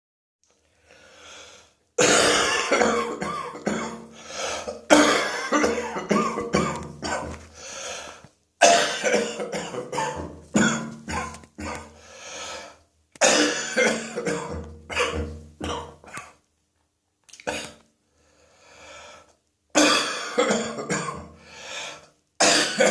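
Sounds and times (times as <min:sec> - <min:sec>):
person wet coughing: 0:02.0 - 0:07.4, 0:08.6 - 0:11.9, 0:13.2 - 0:16.4, 0:17.4 - 0:17.8, 0:19.8 - 0:21.3, 0:22.4 - 0:22.9.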